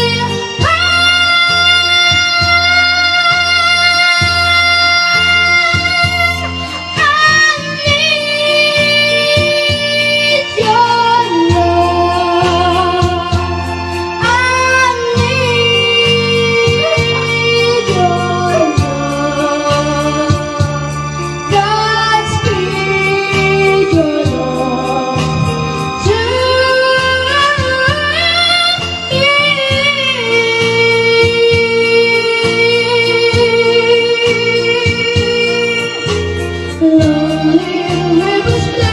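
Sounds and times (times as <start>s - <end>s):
person singing: 0.0s - 38.9s
pulsing bass beat: 11.5s - 22.8s
steady beat: 15.2s - 19.2s.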